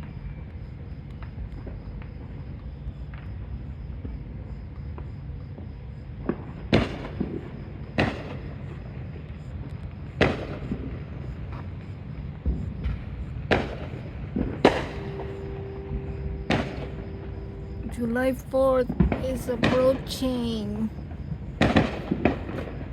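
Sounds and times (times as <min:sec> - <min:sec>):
faint fireworks pops: 0:01.1 - 0:22.9
fireworks bangs: 0:12.9 - 0:20.9
steady tone: 0:14.8 - 0:20.8.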